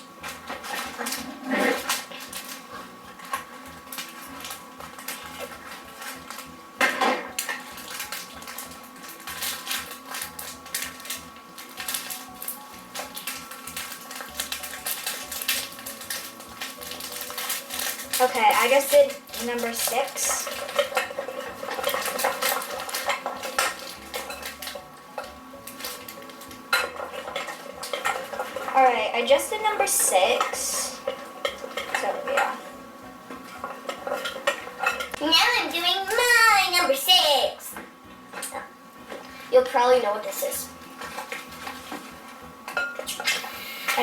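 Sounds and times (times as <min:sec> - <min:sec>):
spoon stirring in a bowl: 0:30.1 - 0:35.2.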